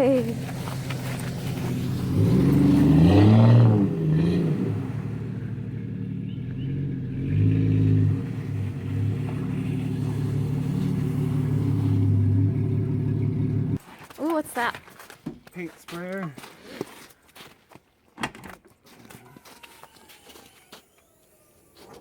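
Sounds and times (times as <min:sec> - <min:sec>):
engine revving: 0:00.2 - 0:13.8.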